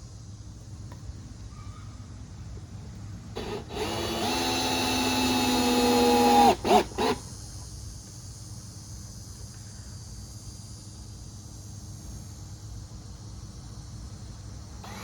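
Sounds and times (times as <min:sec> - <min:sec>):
cordless drill driving a screw: 0:03.4 - 0:07.3.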